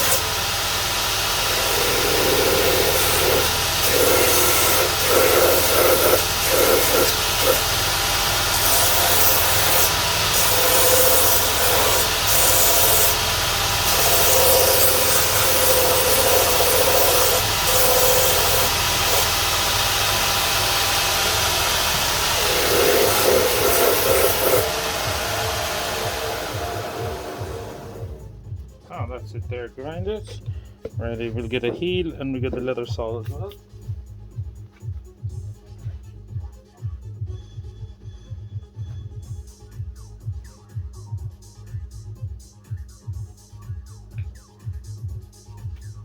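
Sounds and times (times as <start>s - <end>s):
shoe grinding rasp: 0.0s - 28.2s
grinding machine hum: 0.0s - 28.5s.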